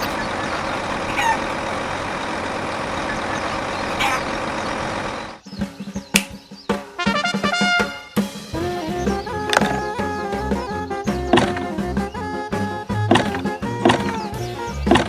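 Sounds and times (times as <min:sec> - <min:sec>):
engine running: 0:00.0 - 0:06.0, 0:08.4 - 0:15.0
high chirps: 0:08.6 - 0:15.0
sparse pitched music-like sounds: 0:08.7 - 0:15.0.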